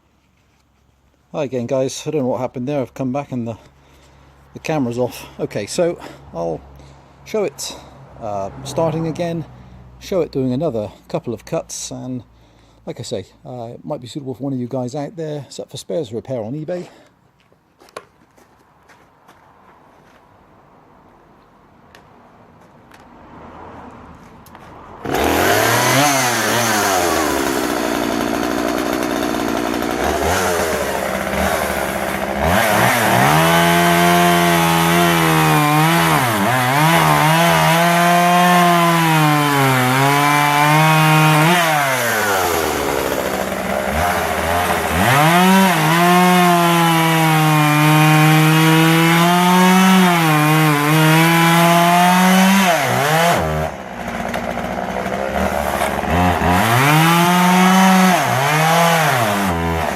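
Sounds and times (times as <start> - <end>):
chainsaw cutting wood: 24.5 - 59.9.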